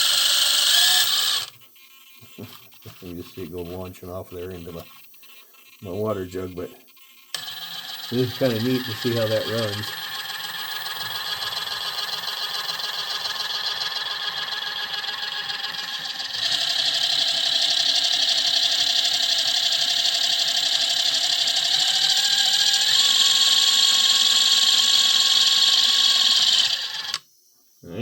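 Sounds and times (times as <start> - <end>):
electric motor and gears whining: 0.0 - 27.2.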